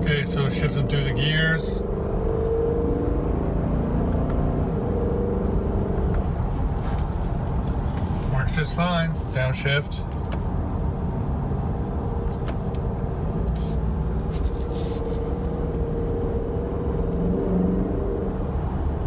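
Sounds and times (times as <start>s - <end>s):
car engine running: 0.0s - 2.8s, 3.6s - 19.0s
road noise inside car: 0.0s - 19.0s.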